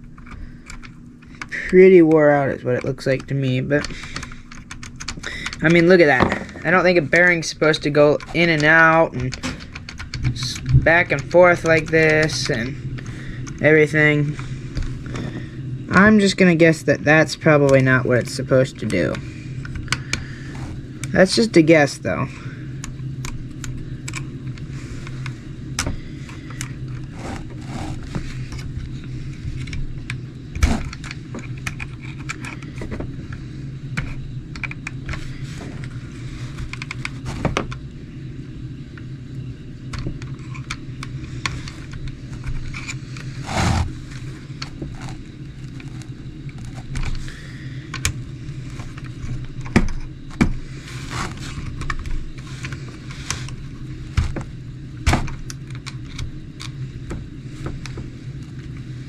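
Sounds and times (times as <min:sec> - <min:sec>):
small parts clicking and rattling: 0:00.0 - 0:16.2, 0:22.8 - 0:37.8, 0:39.9 - 0:50.4
steady low hum: 0:00.0 - 0:59.0.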